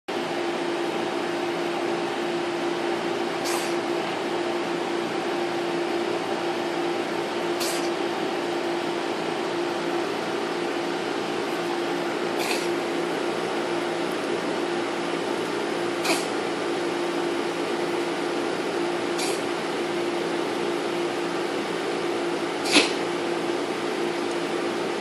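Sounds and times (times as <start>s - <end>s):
steady background hum: 0.1s - 25.0s
cat coughing up a hairball: 3.4s - 3.9s, 7.6s - 8.1s, 12.4s - 12.8s, 16.0s - 16.5s, 19.1s - 19.5s, 22.6s - 23.2s.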